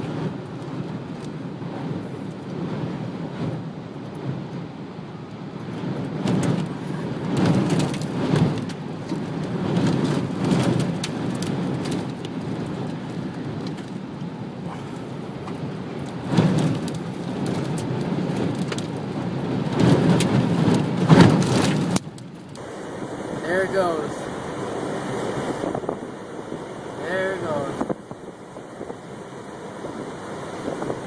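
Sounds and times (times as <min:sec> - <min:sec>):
gusting wind: 0:00.0 - 0:31.0
heavy rain pelting: 0:06.2 - 0:31.0.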